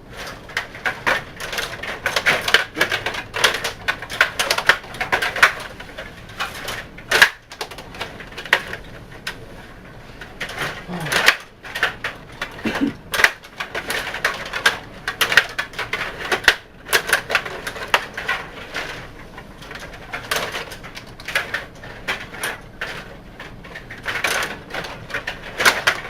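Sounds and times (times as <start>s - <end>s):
table hockey players clacking: 0.2s - 9.4s, 10.2s - 19.0s, 23.7s - 26.0s.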